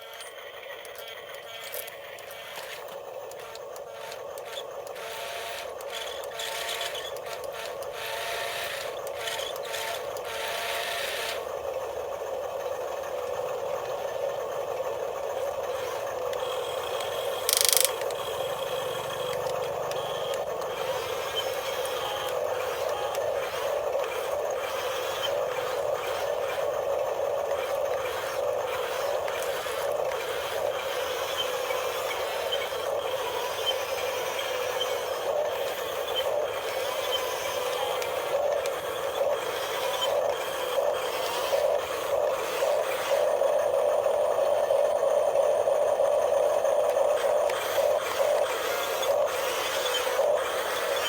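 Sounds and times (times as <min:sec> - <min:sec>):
small electric motor whining: 0:00.0 - 0:51.0
clicks and rattles: 0:17.0 - 0:18.2.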